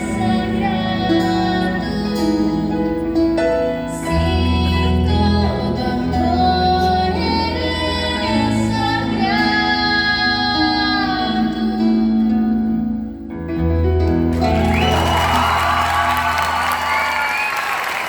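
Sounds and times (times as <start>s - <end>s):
girl singing: 0.0s - 3.0s, 3.9s - 12.7s.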